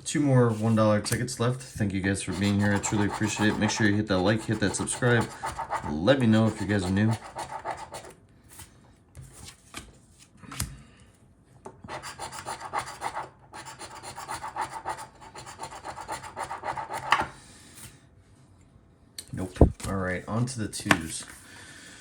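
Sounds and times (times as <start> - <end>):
scratching lottery ticket: 0.5 - 8.1, 11.9 - 17.1.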